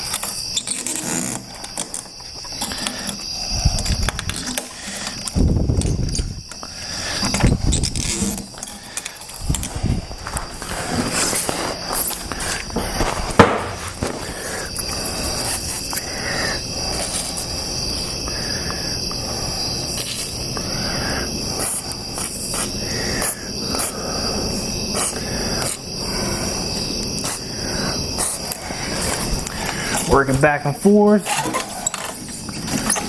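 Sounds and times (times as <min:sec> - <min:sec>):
crickets chirping: 0:00.0 - 0:33.0.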